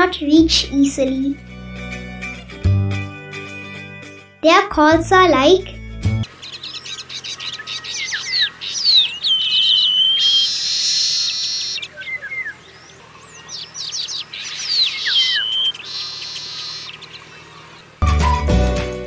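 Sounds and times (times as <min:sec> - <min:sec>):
bird song with chirps and buzz: 0:06.0 - 0:18.4.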